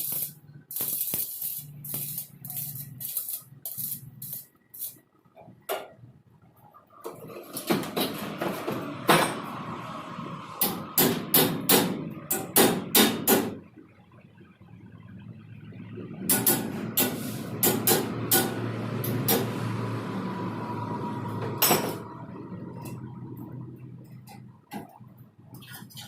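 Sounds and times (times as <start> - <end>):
hammer striking steel: 10.6 - 13.6, 16.3 - 19.5.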